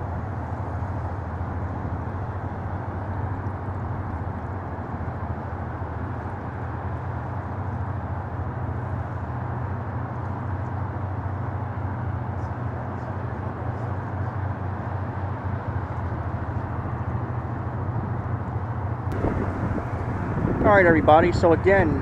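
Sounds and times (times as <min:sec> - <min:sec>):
low rumble: 0:19.1 - 0:22.0.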